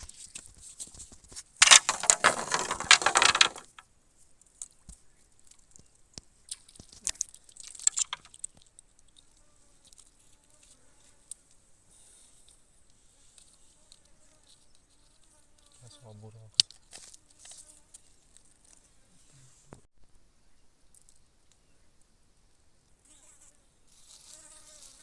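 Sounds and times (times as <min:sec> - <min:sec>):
close crackling and rustling: 0:00.0 - 0:19.9.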